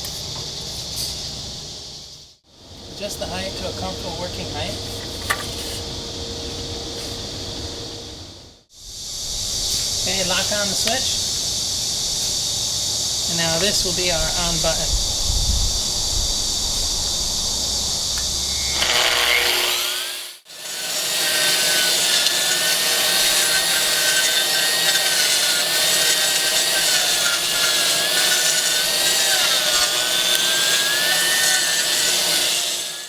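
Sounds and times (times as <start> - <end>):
concrete grinding: 4.3 - 5.9, 17.8 - 33.0
motor whine: 12.6 - 20.4.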